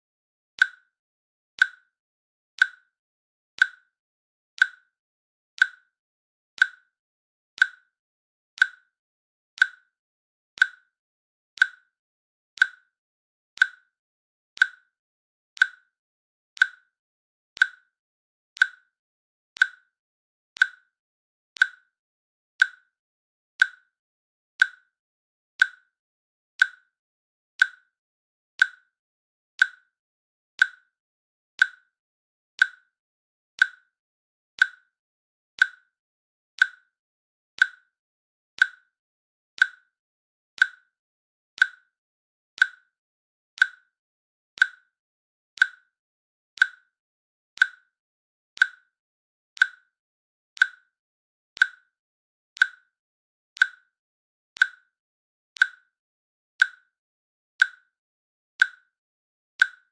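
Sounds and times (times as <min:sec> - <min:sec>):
timer clicks: 0:00.6 - 0:00.9, 0:01.6 - 0:01.9, 0:02.6 - 0:02.9, 0:03.6 - 0:03.9, 0:04.6 - 0:04.9, 0:05.6 - 0:05.9, 0:06.6 - 0:06.9, 0:07.6 - 0:07.9, 0:08.6 - 0:08.9, 0:09.6 - 0:09.9, 0:10.6 - 0:10.9, 0:11.6 - 0:11.9, 0:12.6 - 0:12.9, 0:13.6 - 0:13.9, 0:14.6 - 0:14.9, 0:15.6 - 0:15.9, 0:16.6 - 0:16.9, 0:17.6 - 0:17.9, 0:18.6 - 0:19.0, 0:19.6 - 0:20.0, 0:20.6 - 0:21.0, 0:21.6 - 0:21.9, 0:22.6 - 0:22.9, 0:23.6 - 0:23.9, 0:24.6 - 0:25.0, 0:25.6 - 0:25.9, 0:26.6 - 0:26.9, 0:27.6 - 0:27.9, 0:28.6 - 0:28.9, 0:29.6 - 0:29.9, 0:30.6 - 0:31.0, 0:31.6 - 0:32.0, 0:32.6 - 0:33.0, 0:33.6 - 0:33.9, 0:34.6 - 0:35.0, 0:35.6 - 0:36.0, 0:36.6 - 0:37.0, 0:37.6 - 0:37.9, 0:38.6 - 0:39.0, 0:39.6 - 0:40.0, 0:40.6 - 0:41.0, 0:41.6 - 0:42.0, 0:42.6 - 0:43.0, 0:43.6 - 0:44.0, 0:44.6 - 0:45.0, 0:45.6 - 0:46.0, 0:46.6 - 0:47.0, 0:47.6 - 0:48.0, 0:48.6 - 0:49.0, 0:49.6 - 0:50.0, 0:50.6 - 0:51.0, 0:51.6 - 0:51.9, 0:52.6 - 0:53.0, 0:53.6 - 0:54.0, 0:54.6 - 0:54.9, 0:55.6 - 0:55.9, 0:56.6 - 0:56.9, 0:57.6 - 0:57.9, 0:58.6 - 0:58.9, 0:59.6 - 0:59.9.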